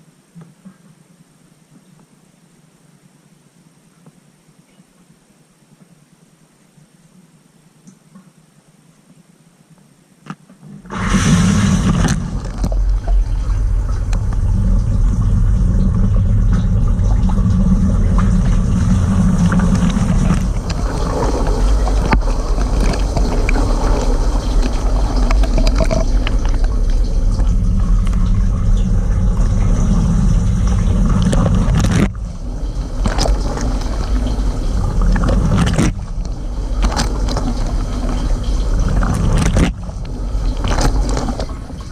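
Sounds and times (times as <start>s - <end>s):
dishwasher low hum: 10.7s - 41.9s.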